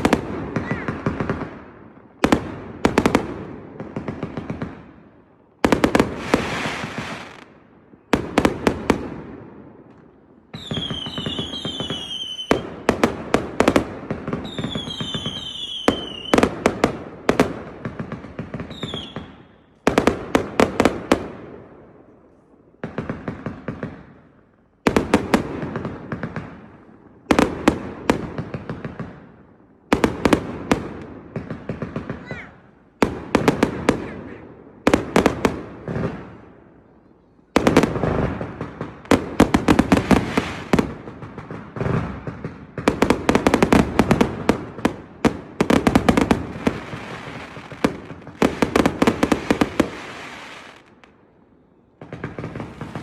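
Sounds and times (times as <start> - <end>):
fireworks shots and bursts: 0.0 - 22.1, 22.7 - 36.8, 37.5 - 53.0
fireworks crackle: 5.6 - 7.5, 37.7 - 51.2, 52.0 - 53.0
falling-pitch fireworks whistles: 6.1 - 8.2, 10.5 - 12.8, 14.3 - 16.5, 18.6 - 19.8, 46.1 - 53.0.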